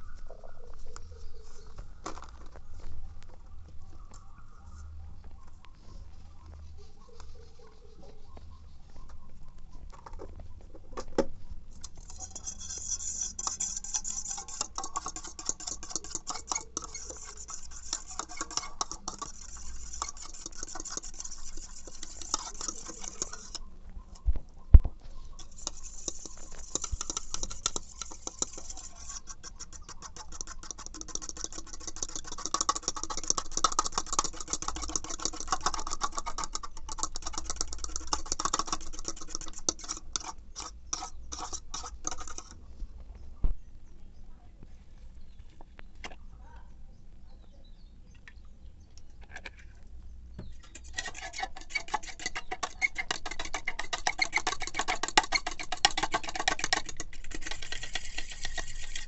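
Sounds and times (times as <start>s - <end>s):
utensil scraping container: 11.7s - 23.7s, 25.4s - 42.6s, 50.4s - 59.0s.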